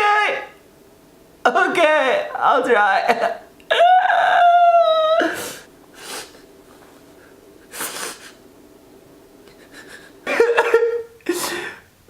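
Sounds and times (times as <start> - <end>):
man crying wail: 3.7 - 5.6
sharp sobbing breaths: 11.2 - 11.9.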